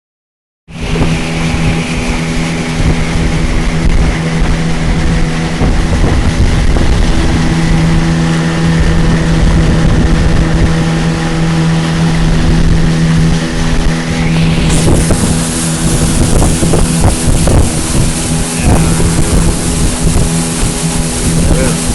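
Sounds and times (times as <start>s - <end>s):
motorboat engine droning: 0.7s - 21.9s
rushing noise: 13.0s - 21.9s.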